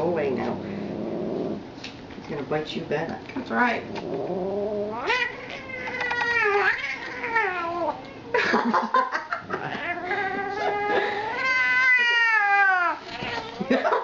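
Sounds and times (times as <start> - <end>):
cat yowling: 4.5 - 8.3, 9.6 - 13.7.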